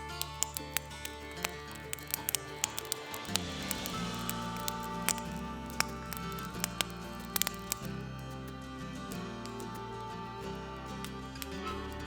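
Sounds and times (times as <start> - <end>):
sharp clicks: 0.0 - 8.3
low drone: 0.0 - 12.0
sustained music tones: 0.0 - 12.0.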